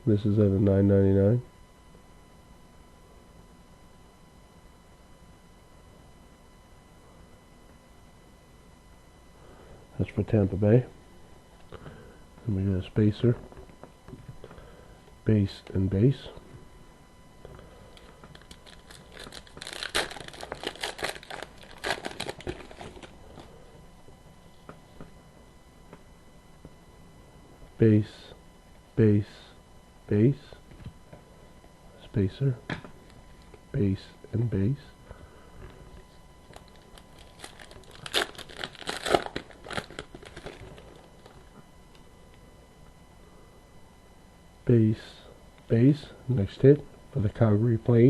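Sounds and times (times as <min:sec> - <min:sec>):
wrapper tearing and crinkling: 0:18.3 - 0:23.5, 0:36.5 - 0:41.4.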